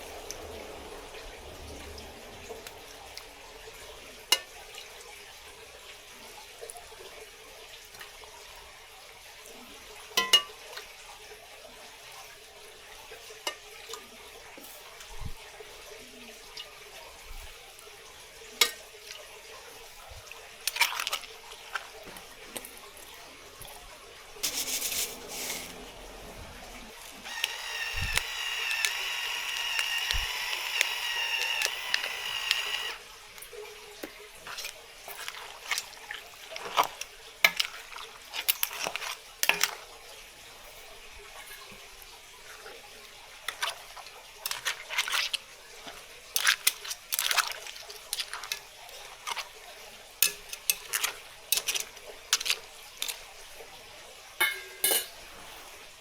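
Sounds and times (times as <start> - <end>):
tap water running into sink: 20.2 - 40.2.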